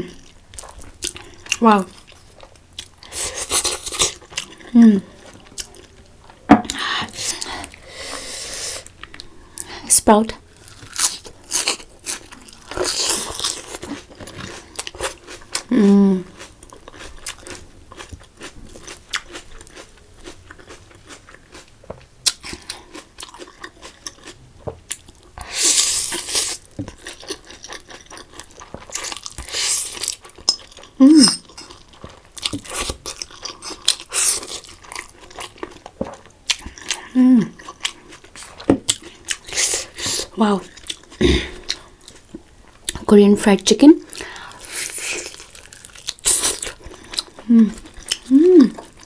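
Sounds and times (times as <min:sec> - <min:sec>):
crunchy chewing: 0:10.5 - 0:43.0, 0:44.1 - 0:49.0
closed-mouth hums: 0:47.4 - 0:48.9.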